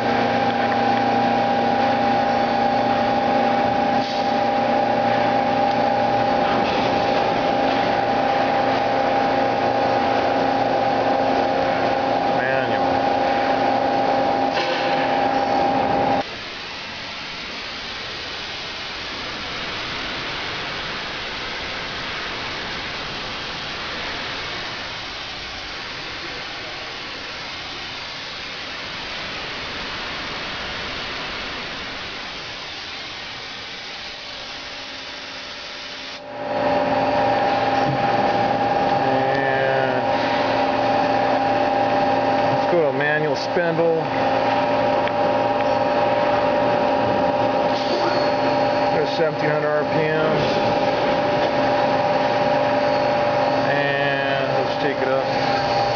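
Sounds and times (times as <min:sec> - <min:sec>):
lathe humming: 0:00.0 - 0:16.3, 0:36.2 - 0:55.9
even hiss: 0:47.7 - 0:55.9.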